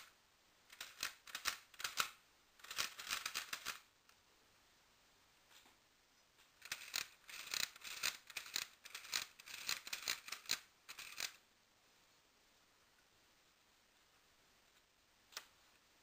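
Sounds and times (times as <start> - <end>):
plastic toy clicks and clacks: 0.7 - 3.9, 6.6 - 11.4.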